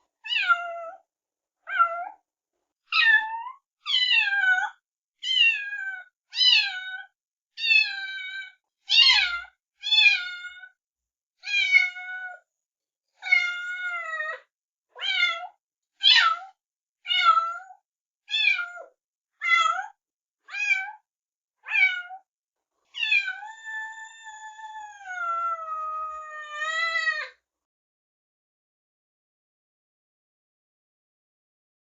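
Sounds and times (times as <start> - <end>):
cat meowing: 0.3 - 1.0, 3.0 - 10.7, 11.4 - 12.4, 13.2 - 16.5, 17.1 - 22.3, 22.9 - 27.4.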